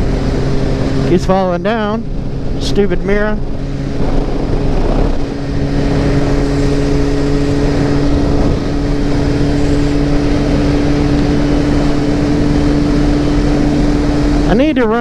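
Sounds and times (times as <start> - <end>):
wind noise: 0.0 - 14.5
motorcycle engine cruising: 0.0 - 15.0
road noise: 0.0 - 15.0.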